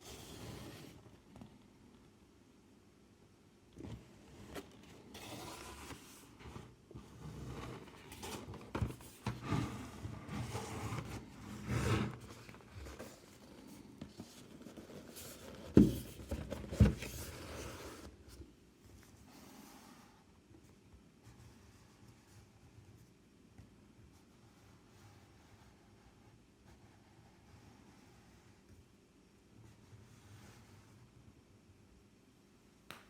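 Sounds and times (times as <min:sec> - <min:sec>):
cardboard scraping and rustling: 0:03.8 - 0:18.5.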